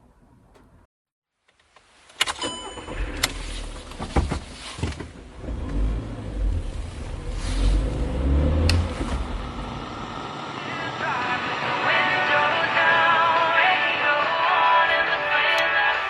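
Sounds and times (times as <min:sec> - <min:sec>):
car engine rumbling: 0:02.6 - 0:14.8.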